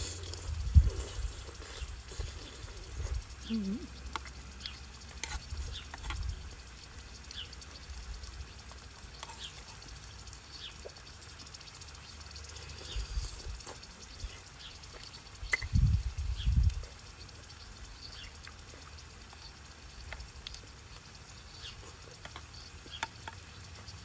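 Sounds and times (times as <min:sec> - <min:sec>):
wind on microphone: 0:00.0 - 0:03.5, 0:15.4 - 0:16.9
food sizzling on grill: 0:00.0 - 0:24.0.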